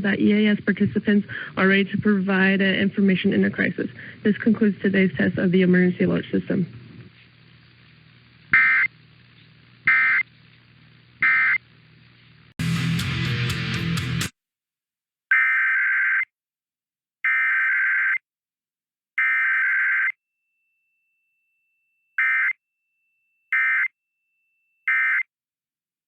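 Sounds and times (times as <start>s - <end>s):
warbling data bursts: 8.5s - 9.0s, 9.9s - 10.3s.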